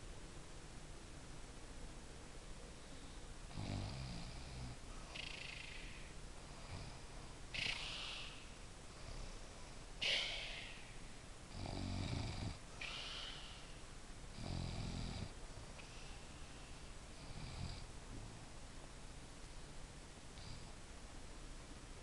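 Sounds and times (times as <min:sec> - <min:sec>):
person snoring: 0:03.5 - 0:06.0, 0:11.5 - 0:13.7, 0:14.4 - 0:15.3, 0:17.2 - 0:17.9.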